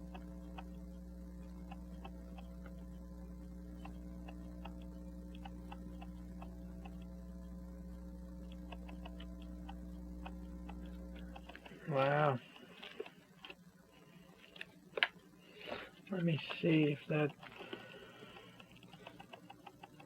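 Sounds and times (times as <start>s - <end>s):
steady electrical hum: 0.0s - 20.0s
faint watch ticking: 15.8s - 20.0s.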